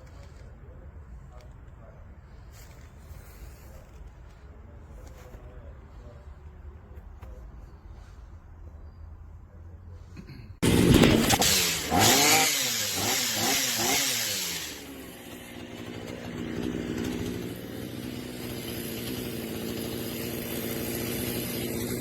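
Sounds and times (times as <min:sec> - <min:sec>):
small two-stroke engine revving: 0:10.6 - 0:22.0.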